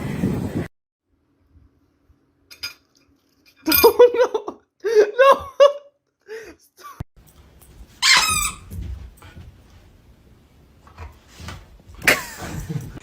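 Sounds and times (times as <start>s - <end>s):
animal squeaking: 8.0s - 8.7s.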